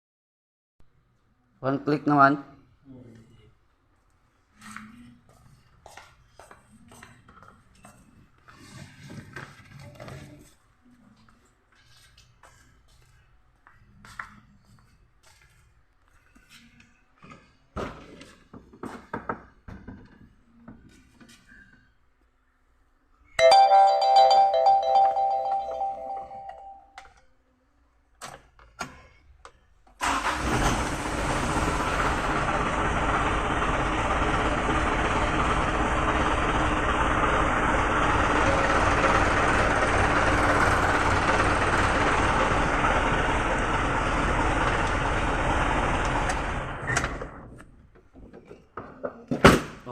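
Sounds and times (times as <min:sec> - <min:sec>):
ringing tone: 0:23.4 - 0:27.0
diesel truck engine starting: 0:30.0 - 0:47.6.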